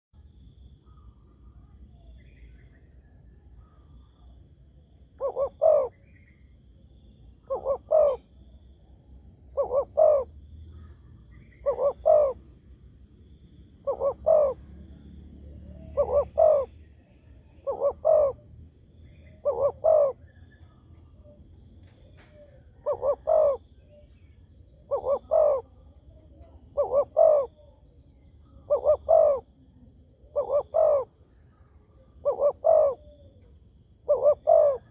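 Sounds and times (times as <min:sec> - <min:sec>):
dove cooing: 0:05.2 - 0:06.1, 0:07.4 - 0:08.3, 0:09.5 - 0:10.4, 0:11.4 - 0:12.6, 0:13.8 - 0:18.5, 0:19.1 - 0:34.9.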